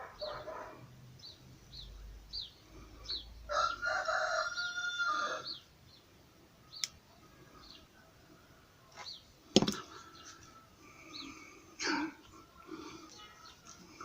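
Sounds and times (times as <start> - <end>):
small bird chirping: 1.2 - 3.4
rooster crowing: 3.5 - 5.6.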